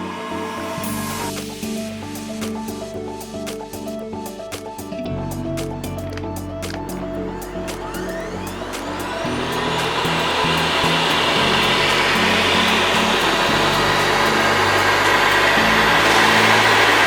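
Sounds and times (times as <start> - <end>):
vacuum cleaner motor whining: 7.2 - 17.0.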